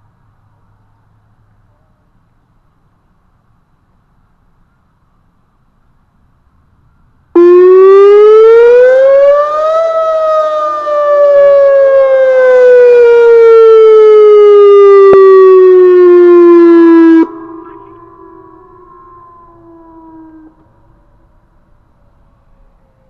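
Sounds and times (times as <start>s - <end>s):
outdoor warning siren wailing: 7.3s - 23.0s.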